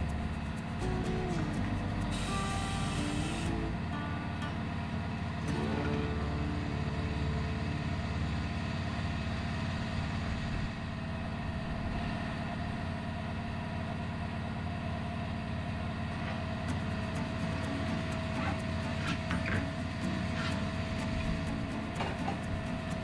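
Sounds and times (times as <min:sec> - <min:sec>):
motor humming: 0:00.0 - 0:10.1, 0:16.3 - 0:23.0.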